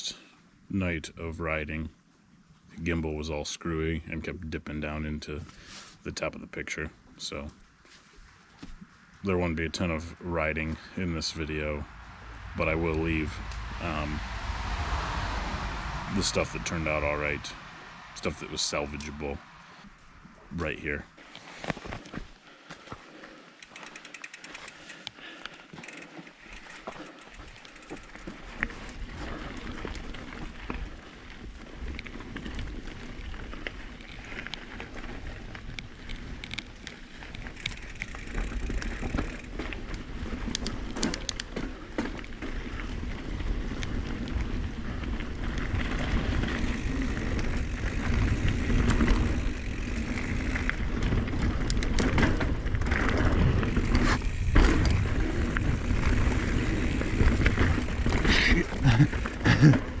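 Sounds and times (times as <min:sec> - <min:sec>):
bike tyres rolling on dirt: 0:06.6 - 1:00.0
bike chain and frame clattering: 0:23.2 - 0:59.9.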